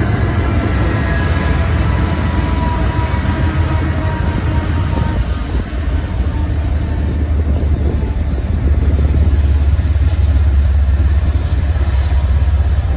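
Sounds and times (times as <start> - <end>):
train horn: 0.0 - 8.6
freight train rumbling past: 0.0 - 12.9.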